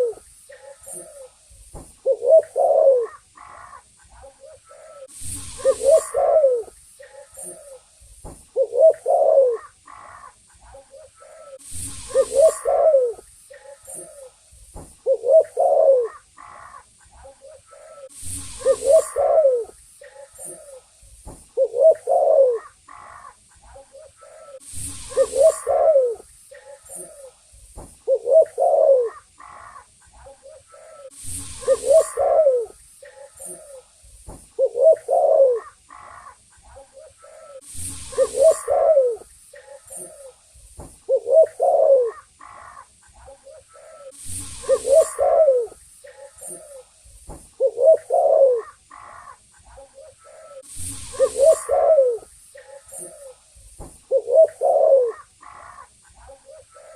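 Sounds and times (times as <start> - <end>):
dove cooing: 0.0 - 1.4, 2.0 - 7.9, 8.5 - 14.4, 15.0 - 20.9, 21.5 - 27.4, 28.0 - 33.9, 34.6 - 40.4, 41.0 - 46.9, 47.6 - 53.4, 54.1 - 56.9
short bursts of hiss: 4.8 - 10.4, 11.5 - 16.4, 18.0 - 23.0, 24.3 - 29.5, 31.0 - 36.5, 37.6 - 42.5, 44.0 - 49.0, 50.5 - 54.4.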